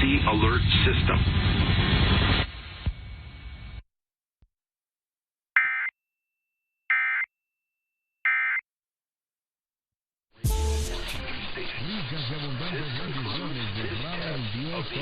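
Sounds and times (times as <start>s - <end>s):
broadcast audio: 0.0s - 3.8s, 10.4s - 15.0s.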